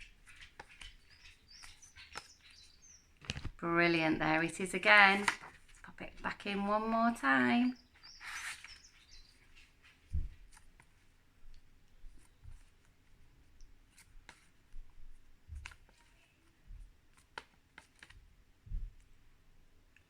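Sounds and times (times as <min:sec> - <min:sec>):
paper flashcards flipping: 0:00.2 - 0:03.6, 0:04.6 - 0:06.9, 0:08.0 - 0:09.8, 0:13.9 - 0:14.5, 0:15.6 - 0:16.2, 0:17.1 - 0:18.2.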